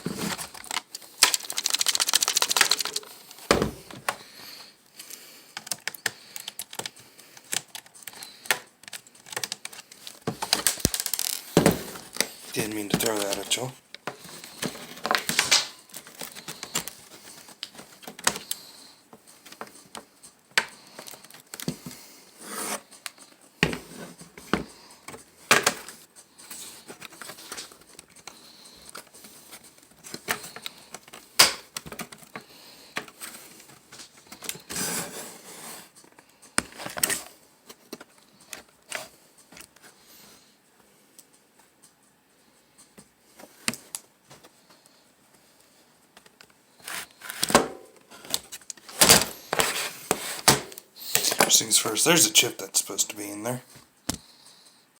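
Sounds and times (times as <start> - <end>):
laptop parts clicking and tapping: 0.0 - 35.0, 35.9 - 40.0, 54.0 - 54.6.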